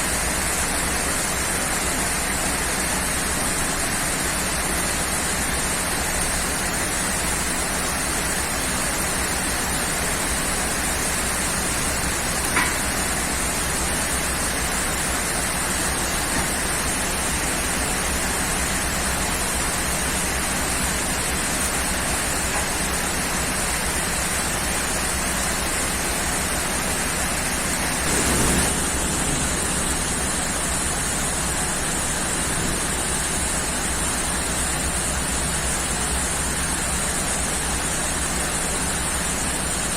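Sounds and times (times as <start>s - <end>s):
heavy rain: 5.3s - 37.0s
sharp crack: 6.2s - 13.2s, 28.0s - 31.0s.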